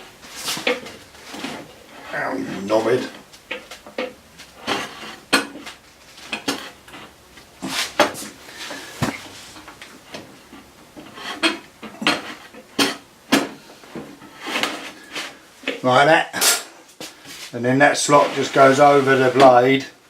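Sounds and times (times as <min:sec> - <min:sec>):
wooden jig knocking and scraping: 0:00.3 - 0:15.8.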